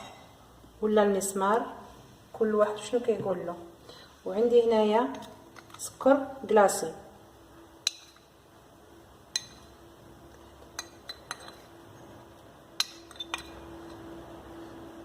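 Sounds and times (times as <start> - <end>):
spoon clinking against a bowl: 9.3 - 9.7, 10.6 - 11.7, 12.8 - 14.0.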